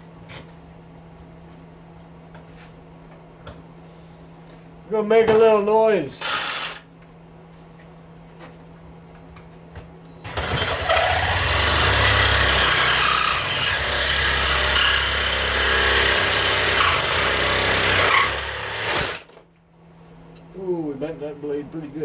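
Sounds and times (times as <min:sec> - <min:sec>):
power tool cutting metal: 0:10.3 - 0:19.3.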